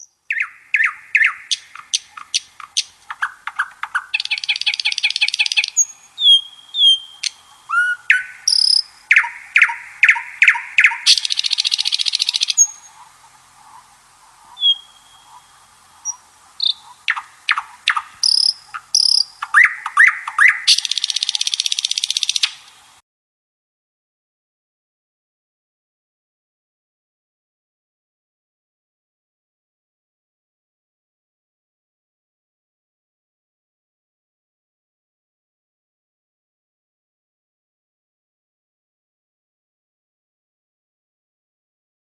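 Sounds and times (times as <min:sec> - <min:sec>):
birds chirping and singing: 0:00.0 - 0:22.6
bird trills: 0:00.0 - 0:22.7.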